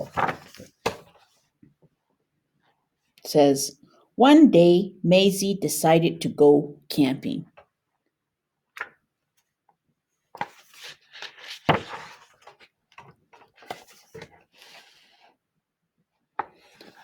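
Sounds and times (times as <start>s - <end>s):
page turning: 0.0s - 1.4s, 10.4s - 15.1s
paper rustling: 0.0s - 1.4s, 10.4s - 15.2s.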